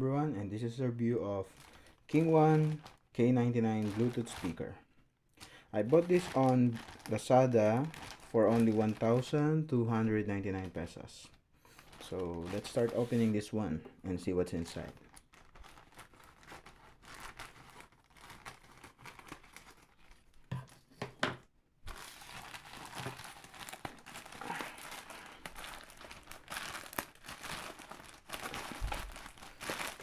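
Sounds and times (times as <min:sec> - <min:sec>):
packaging crinkling and tearing: 0:01.5 - 0:04.6, 0:05.8 - 0:09.4, 0:11.7 - 0:13.3, 0:14.7 - 0:20.9, 0:21.9 - 0:30.0.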